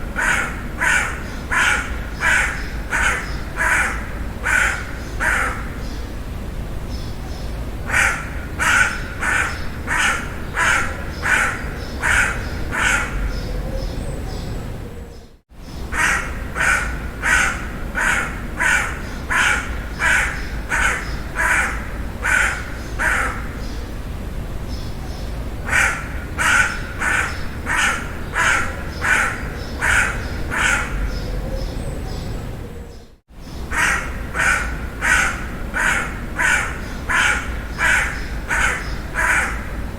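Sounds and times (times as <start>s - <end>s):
crow cawing: 0.1s - 5.9s, 7.9s - 13.4s, 15.9s - 23.7s, 25.6s - 31.2s, 33.7s - 39.9s.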